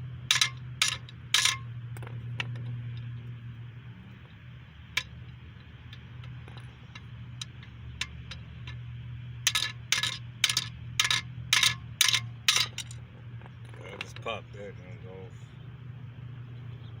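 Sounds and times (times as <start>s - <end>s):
hammer striking metal tool: 0.3s - 1.7s, 9.4s - 13.0s.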